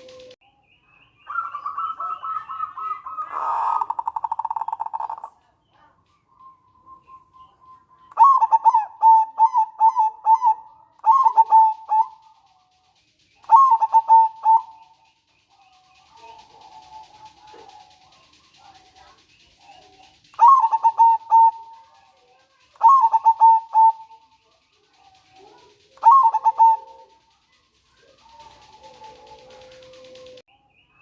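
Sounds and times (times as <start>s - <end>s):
zebra dove calling: 0.0s - 0.4s, 1.3s - 30.4s.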